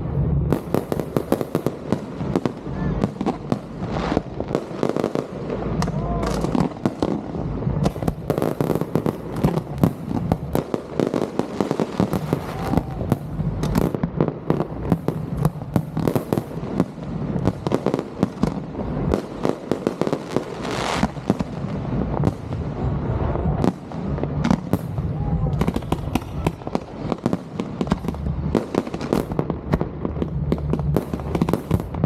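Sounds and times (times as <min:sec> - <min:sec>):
low rumble: 0:00.0 - 0:01.3, 0:27.7 - 0:32.0
fireworks bangs and crackling: 0:00.0 - 0:32.0
fireworks hissing: 0:00.0 - 0:32.0.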